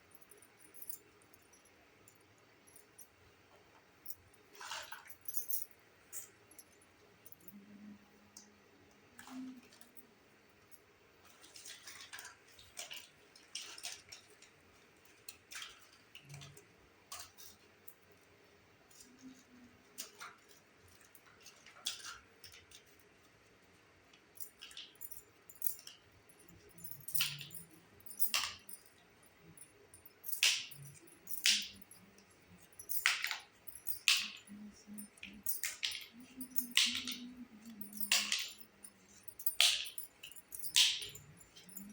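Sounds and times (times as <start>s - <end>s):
toy pieces clicking and clinking: 26.5s - 28.9s, 30.2s - 41.9s.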